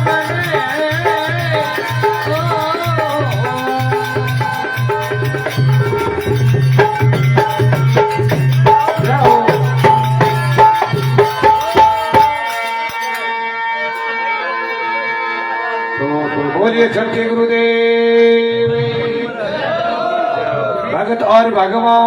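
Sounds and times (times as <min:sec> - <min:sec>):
hand drum beating: 0:00.0 - 0:13.2
sustained melody notes: 0:00.0 - 0:16.6.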